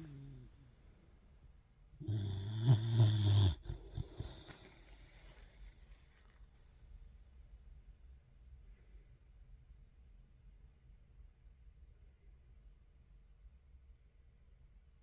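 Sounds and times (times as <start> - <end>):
loud deep snore: 0.0 - 0.8, 2.0 - 6.0
faint short snuffling: 2.2 - 6.9.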